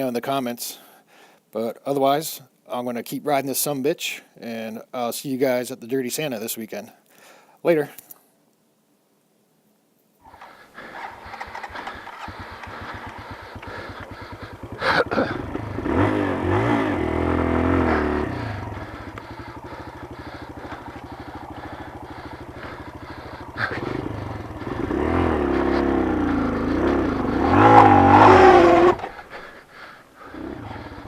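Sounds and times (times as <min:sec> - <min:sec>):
dirt bike engine running: 0:10.4 - 0:29.6, 0:30.2 - 0:31.0
loud wavering mechanical noise: 0:15.5 - 0:29.4.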